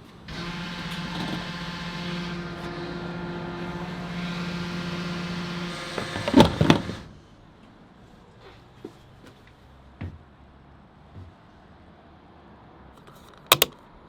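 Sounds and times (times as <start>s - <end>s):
fuel pump running: 0.3s - 7.1s, 13.0s - 13.8s
pump nozzle clacks: 13.0s - 13.8s.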